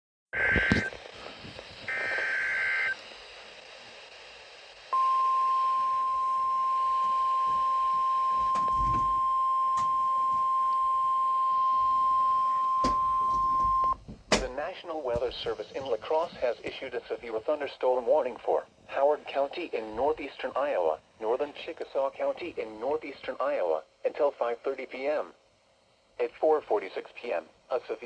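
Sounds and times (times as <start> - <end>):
high steady alarm tone: 1.9 - 3.0, 4.9 - 14.6.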